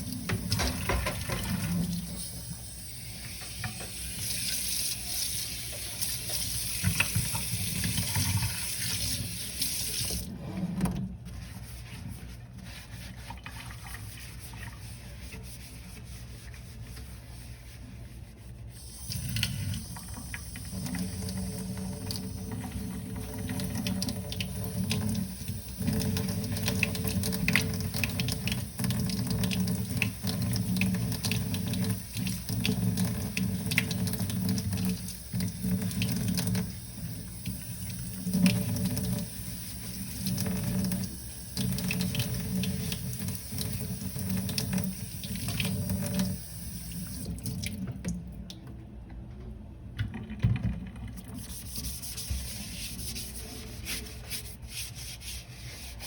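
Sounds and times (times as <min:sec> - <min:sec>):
tap water running: 0:00.0 - 0:11.0, 0:18.8 - 0:48.6.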